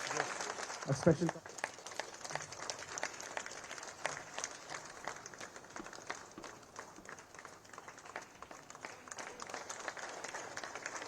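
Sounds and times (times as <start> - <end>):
audience applauding: 0.0 - 11.0.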